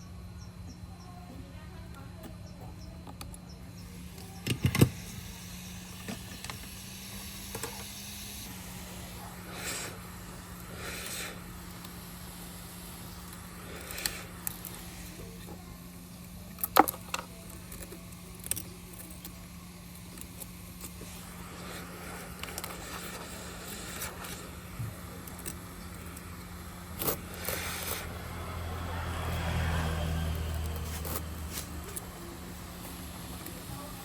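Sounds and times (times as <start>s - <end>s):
low electrical hum: 0.0s - 34.0s
repair tools clicking and tapping: 4.4s - 5.1s.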